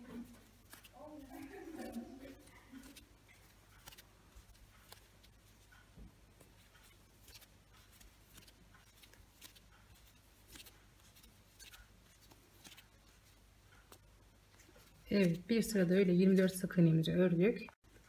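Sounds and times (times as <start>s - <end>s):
crochet hook scratchy ticks: 0.5s - 16.4s.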